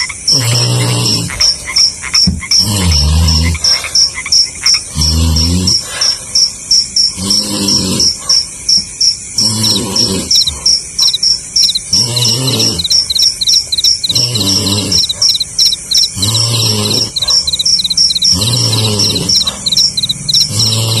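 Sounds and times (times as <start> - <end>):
cricket chirping: 0.0 - 21.0
person snoring: 0.3 - 1.4, 2.6 - 4.0, 4.9 - 6.3, 7.2 - 8.4, 9.4 - 10.8, 11.9 - 13.1, 14.0 - 15.3, 16.1 - 17.5, 18.3 - 19.8, 20.5 - 21.0.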